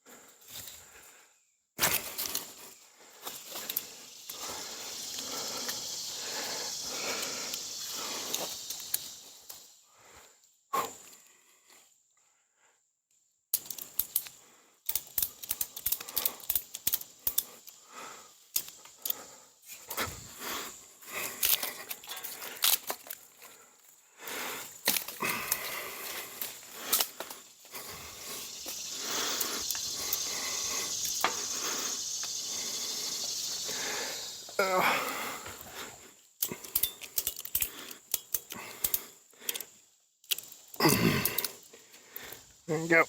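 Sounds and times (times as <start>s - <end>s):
steady hiss: 2.2s - 10.1s, 23.5s - 43.0s.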